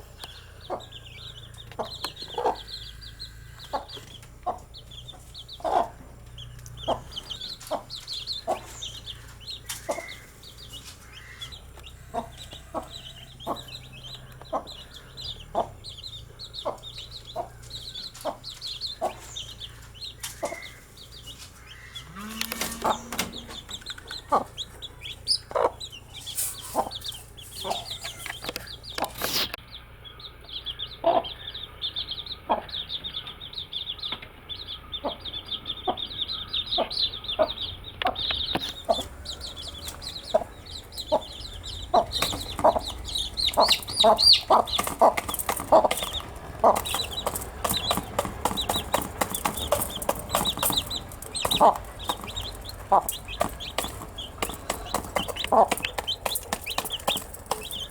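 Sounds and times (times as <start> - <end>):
baby chicks peeping: 0.0 - 57.9
low clucks: 21.9 - 24.8, 38.0 - 57.9
sharp knocks: 22.1 - 23.9, 41.1 - 57.9.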